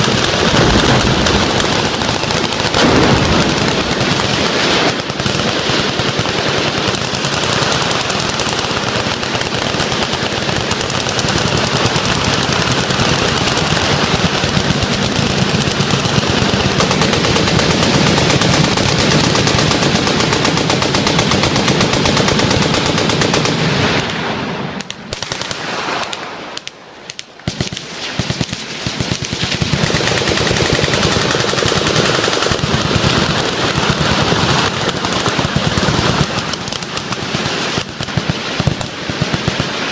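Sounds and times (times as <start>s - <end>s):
machine guns firing: 0.0s - 39.9s.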